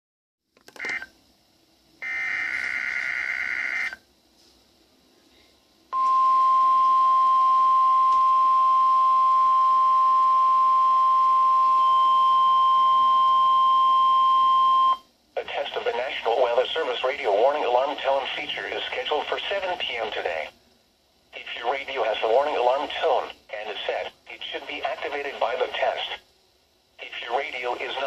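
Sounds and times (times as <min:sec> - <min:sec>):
steady warning alarm tone: 0:02.0 - 0:04.0, 0:06.0 - 0:15.0.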